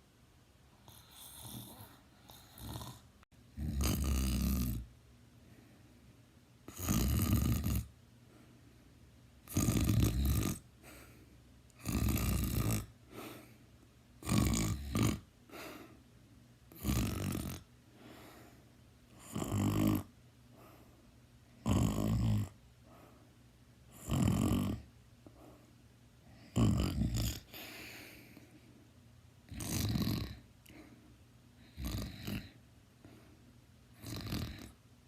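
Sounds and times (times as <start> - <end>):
person snoring loudly: 0.9 - 4.9, 6.7 - 7.9, 9.4 - 11.0, 11.8 - 12.9, 14.2 - 15.3, 16.7 - 17.7, 19.2 - 20.1, 21.6 - 22.6, 23.9 - 24.9, 26.4 - 27.8, 29.5 - 30.4, 31.7 - 32.6, 34.0 - 34.8
faint breathing: 5.4 - 6.4, 8.2 - 9.1, 10.8 - 11.5, 13.0 - 13.8, 15.4 - 16.1, 17.8 - 18.8, 20.5 - 21.2, 22.8 - 23.5, 25.2 - 26.6, 27.4 - 29.0, 30.4 - 33.6.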